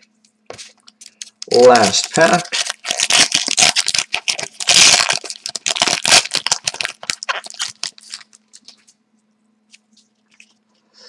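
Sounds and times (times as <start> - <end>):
wrapper tearing and crinkling: 0.8 - 8.8.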